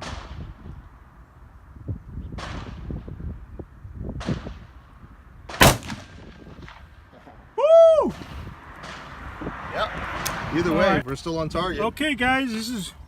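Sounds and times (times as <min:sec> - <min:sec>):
loud rifle shot: 0:05.5 - 0:06.9
distant rifle shots echoing: 0:05.5 - 0:07.3.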